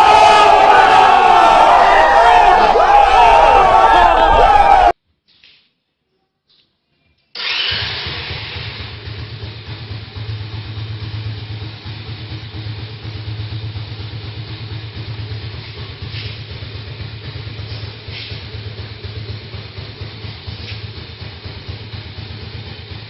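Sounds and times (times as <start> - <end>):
engine running with low rumble: 8.0 - 23.0.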